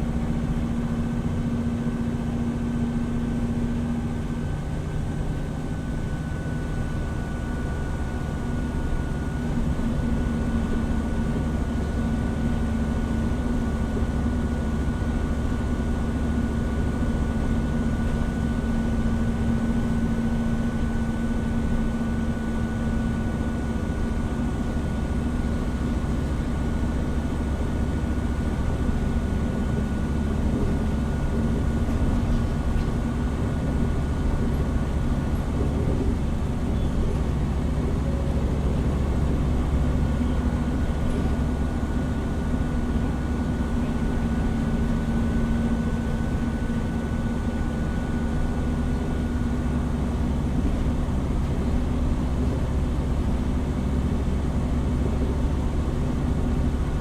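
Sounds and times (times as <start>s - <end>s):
bus engine drone: 0.0s - 57.0s
low road rumble: 15.5s - 57.0s.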